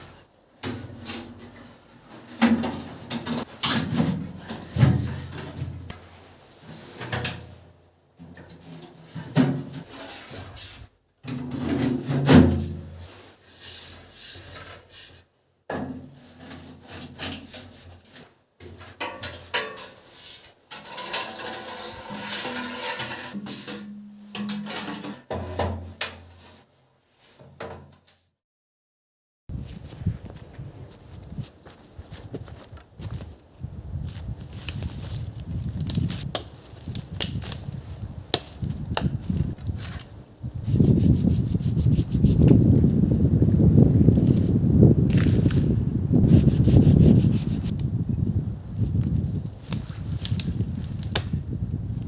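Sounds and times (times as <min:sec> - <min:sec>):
wood scraping and knocking: 0:00.6 - 0:06.1, 0:20.8 - 0:25.8.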